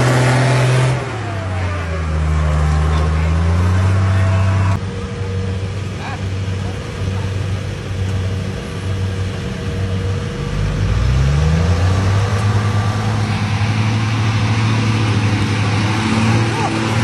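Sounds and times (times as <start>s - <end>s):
engine running and revving: 0.0s - 17.0s.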